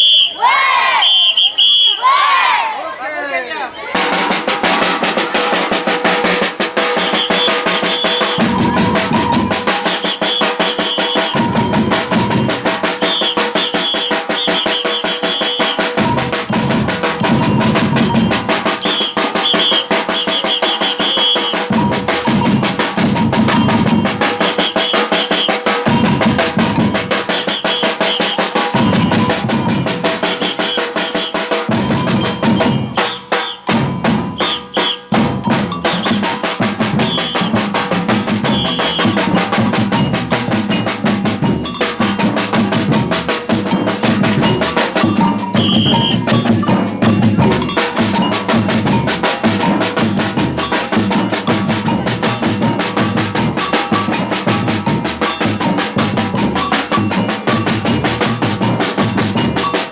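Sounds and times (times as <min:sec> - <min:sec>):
fast snare drum groove: 0:03.9 - 0:59.9
deep bass drums: 0:04.0 - 0:09.8, 0:15.9 - 0:20.9, 0:21.6 - 0:24.6, 0:25.8 - 0:27.5, 0:28.6 - 0:30.2, 0:35.2 - 0:59.9
short high pips: 0:06.8 - 0:09.1, 0:12.8 - 0:16.0, 0:18.7 - 0:21.8, 0:23.5 - 0:26.0, 0:33.0 - 0:35.2, 0:45.1 - 0:46.6.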